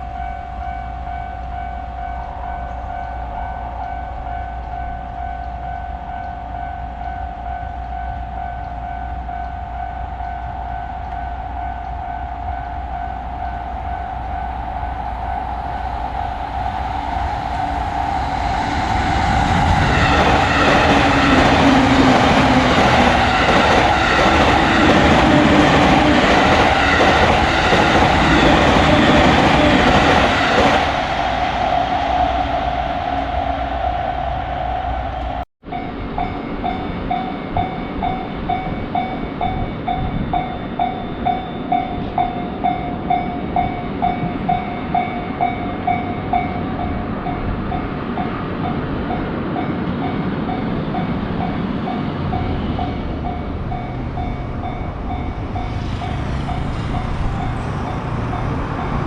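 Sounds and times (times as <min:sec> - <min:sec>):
electric train passing: 0:00.0 - 0:59.0
railroad crossing bell ringing: 0:00.0 - 0:59.0.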